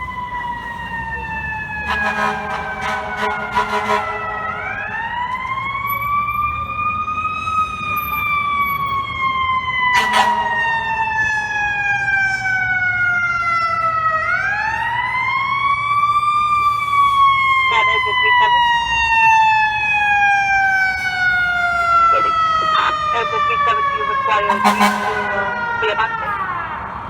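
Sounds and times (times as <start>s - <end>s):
fire siren wailing: 0.0s - 27.0s
short horn blasts: 1.8s - 4.9s, 9.9s - 11.6s, 24.5s - 25.8s.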